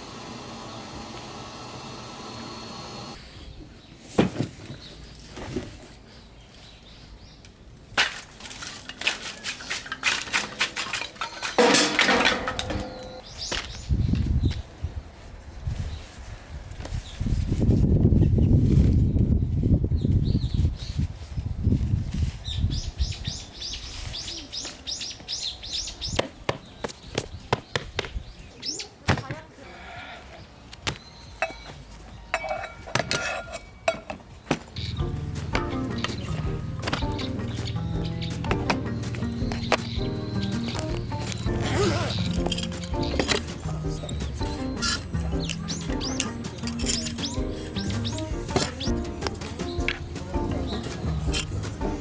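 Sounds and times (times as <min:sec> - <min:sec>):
hard objects knocking and clattering: 0:09.9 - 0:13.2
small birds chirping: 0:12.7 - 0:14.8, 0:22.4 - 0:29.0, 0:34.3 - 0:52.0
sharp clicks: 0:38.4 - 0:50.1.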